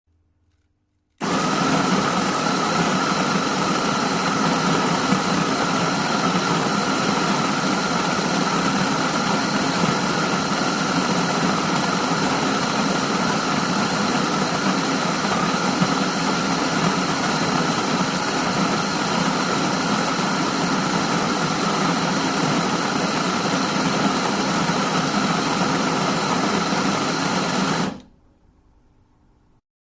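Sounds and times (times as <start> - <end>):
coffee grinder grinding beans: 1.2 - 28.0.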